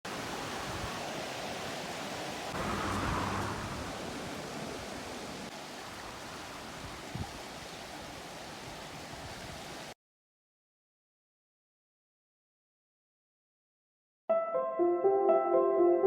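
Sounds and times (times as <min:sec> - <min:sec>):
outdoor rushing noise: 0:02.5 - 0:05.5.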